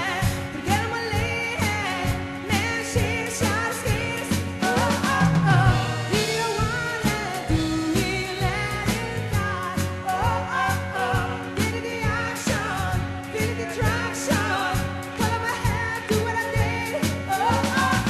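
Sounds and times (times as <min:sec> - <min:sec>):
live band playing pop-soul: 0:00.0 - 0:18.0.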